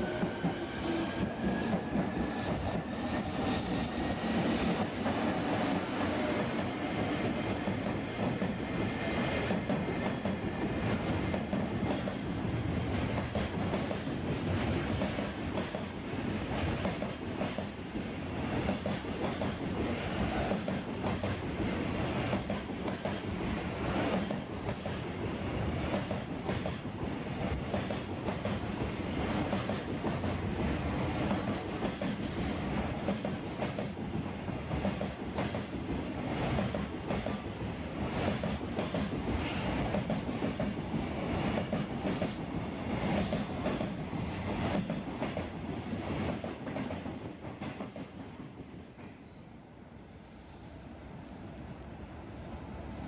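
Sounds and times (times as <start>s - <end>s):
train wheels clattering: 29.4s - 45.6s.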